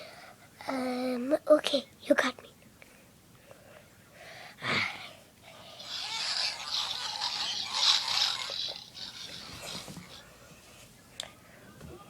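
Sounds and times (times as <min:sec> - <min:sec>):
person making pig squeals: 0:05.6 - 0:10.2.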